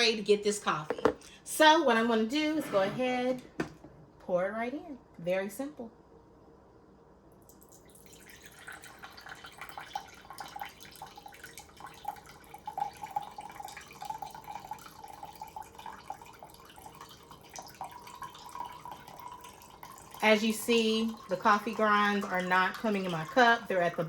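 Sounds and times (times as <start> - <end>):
coffee pouring into a cup: 7.4 - 24.0.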